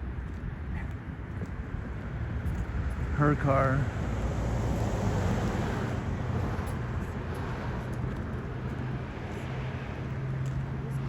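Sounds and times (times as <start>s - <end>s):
street traffic: 0.0s - 11.0s.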